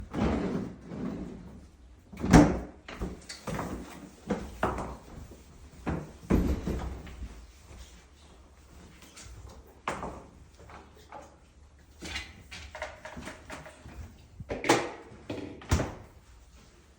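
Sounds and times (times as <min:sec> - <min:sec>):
heavy household items knocking: 0:05.9 - 0:07.2.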